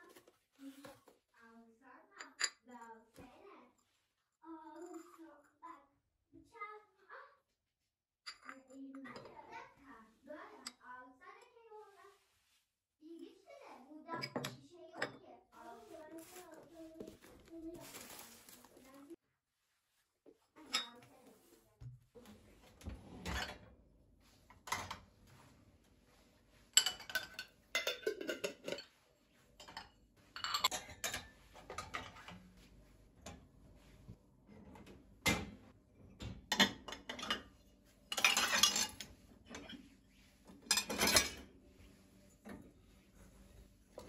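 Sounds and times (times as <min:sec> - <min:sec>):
dishes and cutlery clattering: 0:08.3 - 0:09.4, 0:23.0 - 0:23.6, 0:24.5 - 0:25.1, 0:26.7 - 0:29.0, 0:29.6 - 0:32.6, 0:36.2 - 0:39.8, 0:40.5 - 0:41.5.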